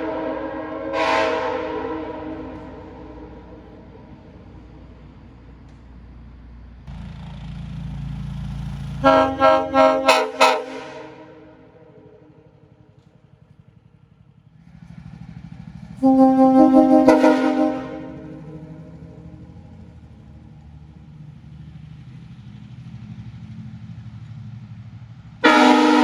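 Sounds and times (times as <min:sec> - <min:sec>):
train horn blasts: 0:00.0 - 0:04.4, 0:09.0 - 0:12.4, 0:16.0 - 0:19.9, 0:25.4 - 0:26.0.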